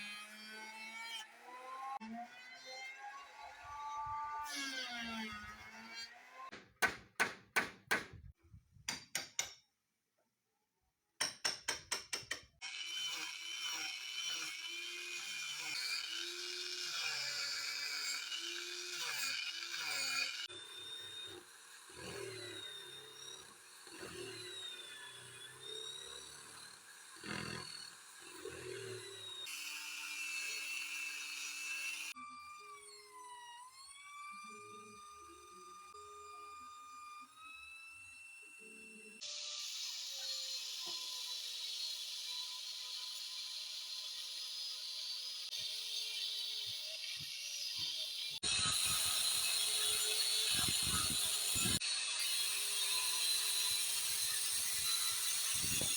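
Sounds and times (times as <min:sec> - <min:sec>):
sharp hammer strikes: 0:06.5 - 0:08.2
power tool whining: 0:12.6 - 0:55.9.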